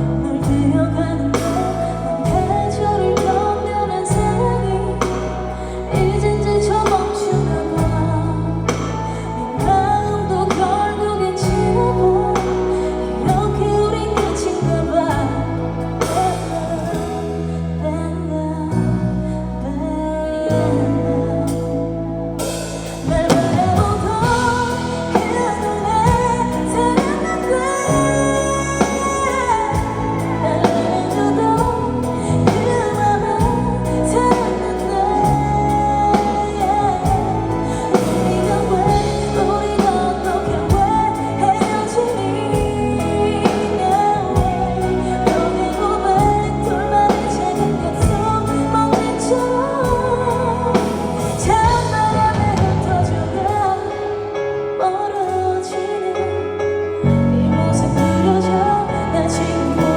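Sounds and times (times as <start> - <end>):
band playing pop ballad: 0.0 - 59.9
woman singing: 0.0 - 59.9.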